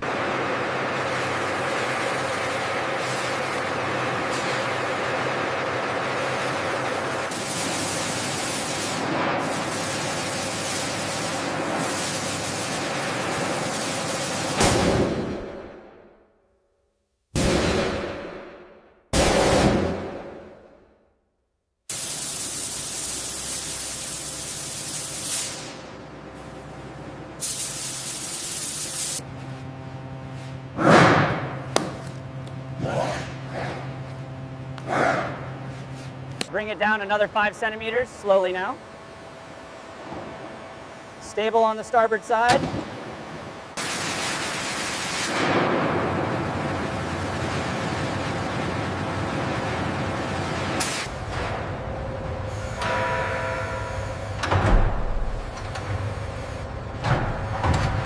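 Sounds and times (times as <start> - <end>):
rushing hiss-like noise: 21.9 - 25.8, 27.4 - 29.2
steady hissing rush of noise: 21.9 - 29.2, 35.4 - 54.5.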